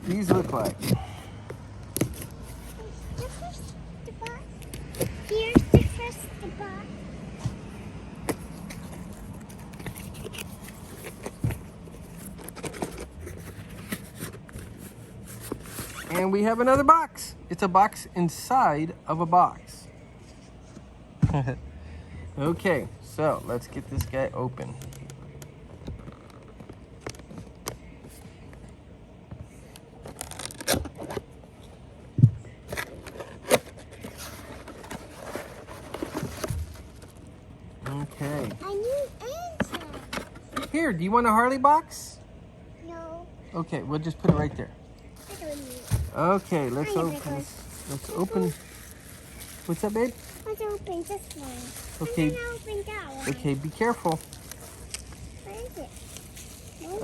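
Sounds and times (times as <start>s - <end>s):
cardboard rustling: 0.0s - 1.1s, 1.9s - 3.6s, 7.4s - 16.6s, 32.7s - 40.8s, 45.2s - 57.0s
cardboard box scraping: 0.1s - 1.1s, 8.3s - 16.3s, 32.8s - 37.2s
cardboard packaging tearing: 45.2s - 57.0s.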